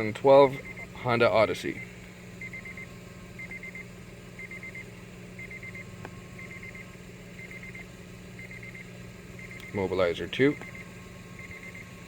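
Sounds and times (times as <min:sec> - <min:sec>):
low steady hum: 0:00.0 - 0:12.0
high electronic beeps: 0:05.4 - 0:05.8, 0:06.4 - 0:06.8, 0:07.4 - 0:07.8, 0:10.6 - 0:11.9.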